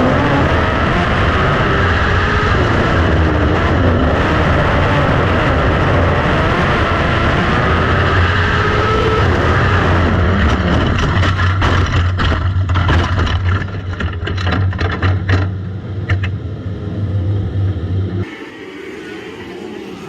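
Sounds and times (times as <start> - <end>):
motorcycle engines racing: 0.0 - 11.9
sharp clicks and knocks: 10.4 - 16.4.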